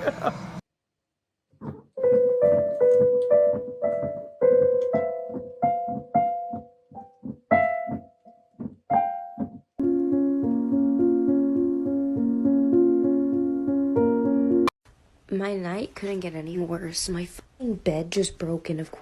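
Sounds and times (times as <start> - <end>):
held keyboard chords: 1.6 - 14.8
piano melody: 1.6 - 14.8.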